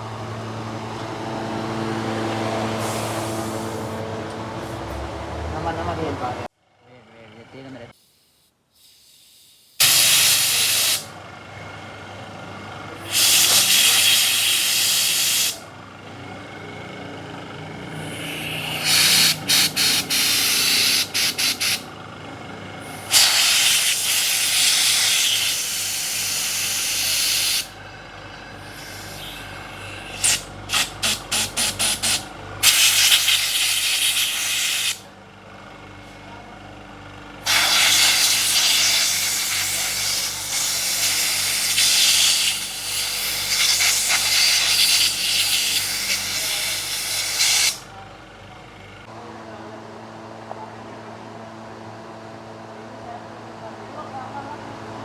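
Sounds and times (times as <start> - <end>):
air blow gun blasts: 9.8 - 11.1, 22.9 - 27.7, 30.1 - 35.0, 37.5 - 47.8.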